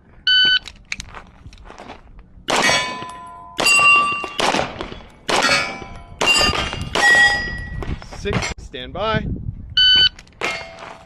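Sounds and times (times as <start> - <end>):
pistol shots: 2.5 - 7.3
metallic clang of steel targets: 2.5 - 8.6, 10.4 - 11.0.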